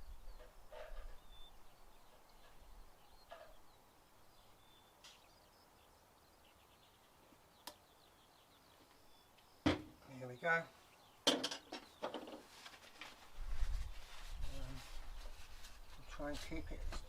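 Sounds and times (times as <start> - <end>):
faint bird chirps: 0.0 - 12.5
soft knocks and rustles: 11.3 - 17.0.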